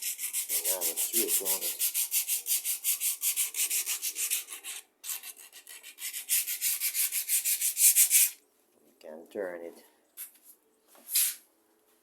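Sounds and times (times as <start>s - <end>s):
sandpaper rubbing on wood: 0.0s - 8.4s.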